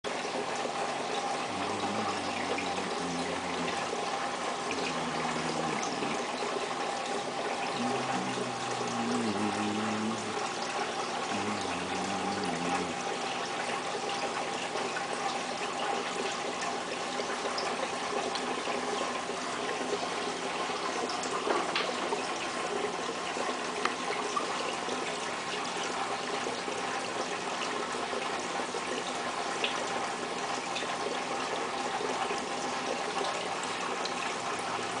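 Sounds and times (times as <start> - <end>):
water splashing in fish tank: 0.0 - 35.0
person humming a tune: 1.5 - 3.8, 4.7 - 6.2, 7.8 - 10.6, 11.3 - 13.0.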